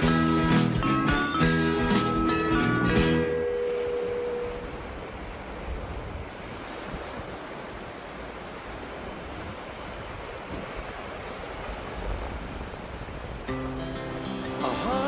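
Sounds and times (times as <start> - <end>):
sea surf washing on beach: 0.0 - 15.0
wind rumbling on microphone: 3.8 - 13.6.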